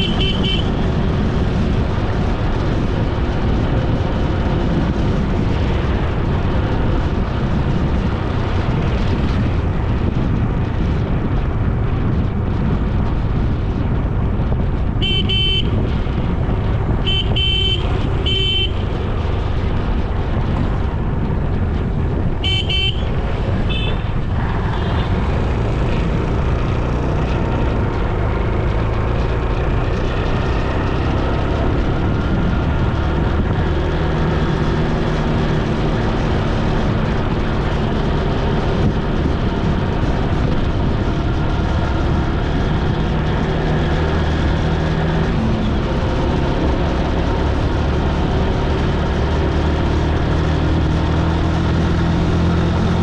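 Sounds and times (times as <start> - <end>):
horn tooting: 0.0 - 0.8, 15.0 - 15.8, 17.0 - 19.0, 22.4 - 25.2
motorbike engine and wind rumble: 0.0 - 53.0.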